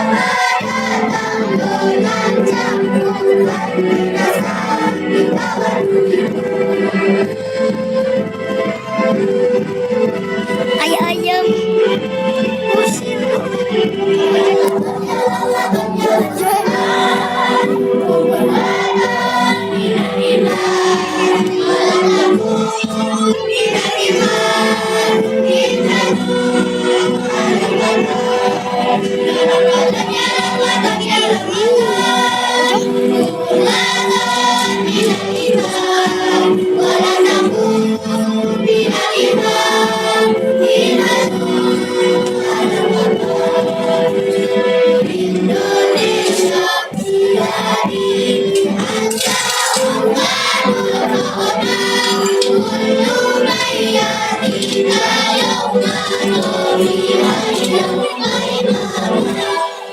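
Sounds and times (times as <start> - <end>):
children's choir singing: 0.0 - 59.9.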